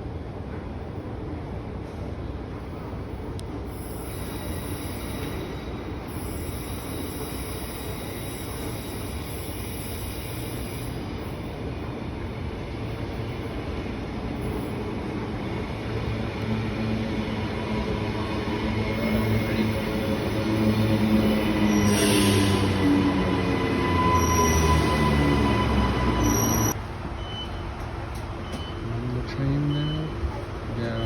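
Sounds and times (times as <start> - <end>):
electric train rumble: 0.0 - 27.1.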